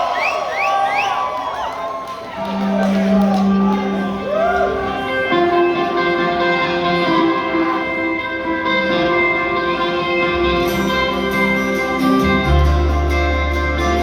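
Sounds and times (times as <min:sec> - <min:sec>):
bass notes: 0:02.5 - 0:14.0
guitar notes ringing: 0:02.5 - 0:14.0.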